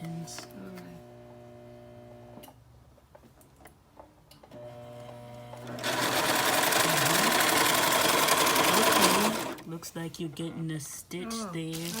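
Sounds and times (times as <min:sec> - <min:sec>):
serger sewing machine running: 0:04.6 - 0:09.6.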